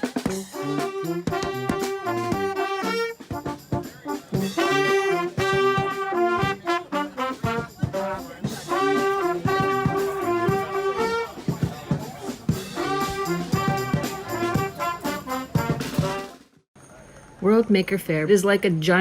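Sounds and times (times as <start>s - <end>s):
horns playing held notes: 0.0s - 16.4s
steady drum hits: 7.4s - 16.4s.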